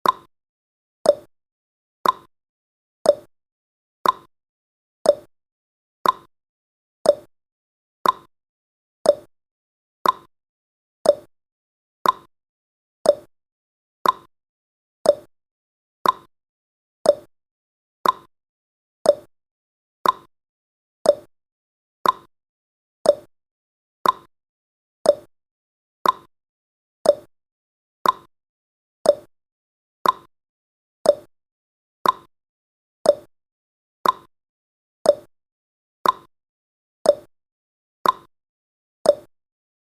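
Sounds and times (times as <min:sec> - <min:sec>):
clock ticking: 0:02.0 - 0:02.3, 0:04.0 - 0:04.3, 0:06.0 - 0:06.3, 0:08.0 - 0:08.3, 0:10.0 - 0:10.3, 0:12.0 - 0:12.3, 0:14.0 - 0:14.3, 0:15.1 - 0:15.3, 0:16.0 - 0:16.3, 0:18.0 - 0:18.3, 0:20.0 - 0:20.3, 0:22.0 - 0:22.3, 0:24.0 - 0:24.3, 0:25.1 - 0:25.3, 0:26.0 - 0:26.3, 0:27.1 - 0:27.3, 0:28.0 - 0:28.3, 0:29.1 - 0:29.3, 0:30.0 - 0:30.3, 0:32.0 - 0:32.3, 0:33.1 - 0:33.3, 0:34.0 - 0:34.3, 0:36.0 - 0:36.3, 0:38.0 - 0:38.3.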